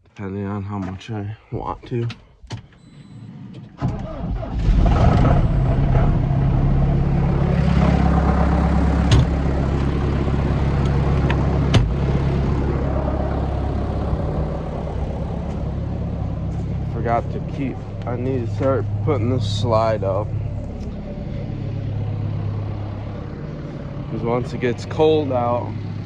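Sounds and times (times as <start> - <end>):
tractor diesel engine idling: 5.5 - 26.0.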